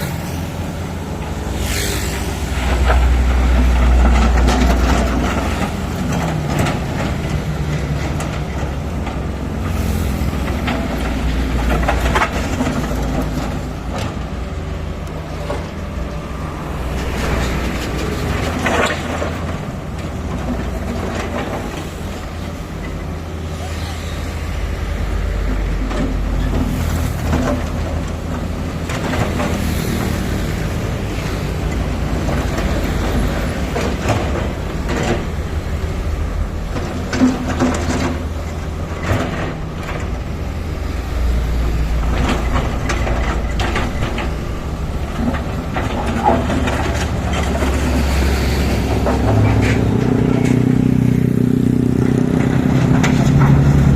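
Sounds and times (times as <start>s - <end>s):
diesel machinery rumbling: 0.0s - 53.9s
sharp clanks and knocks: 41.8s - 53.9s.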